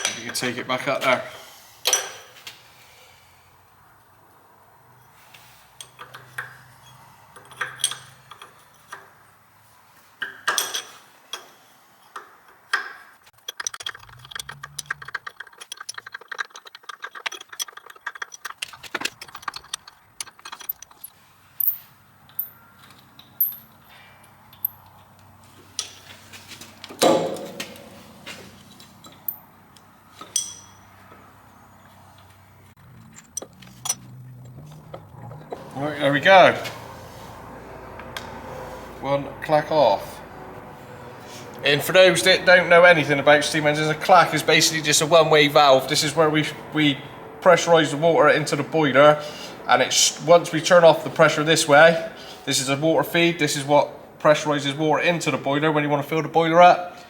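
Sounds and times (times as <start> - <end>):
spanner clinking on metal nuts: 1.9 - 2.4, 5.8 - 9.2, 10.2 - 26.1, 27.0 - 29.6, 30.2 - 31.0, 32.9 - 35.7
loud metal clank: 27.0 - 28.4.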